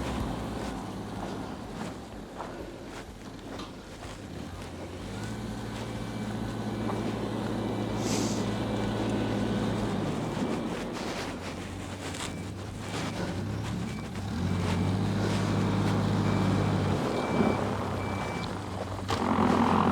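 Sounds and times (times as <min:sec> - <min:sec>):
vehicle driving past: 0:04.2 - 0:19.9.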